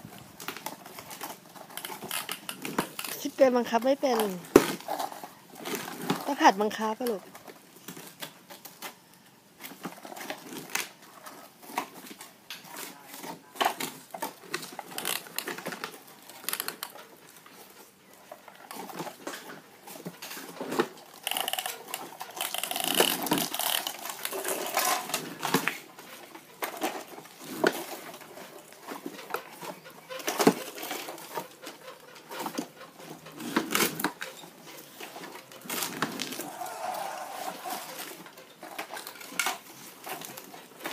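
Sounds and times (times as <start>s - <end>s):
plastic toy vehicles rattling: 0.0s - 40.9s.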